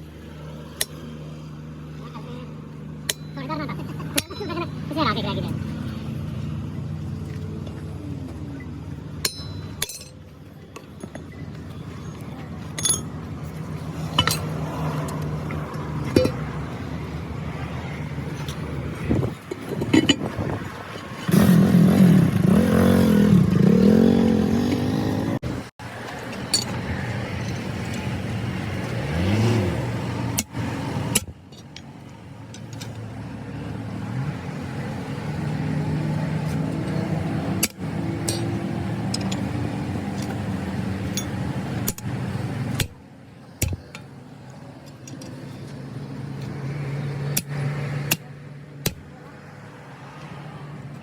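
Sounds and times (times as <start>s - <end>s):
road noise: 0.0s - 51.0s
vehicle engine hum: 0.0s - 51.0s.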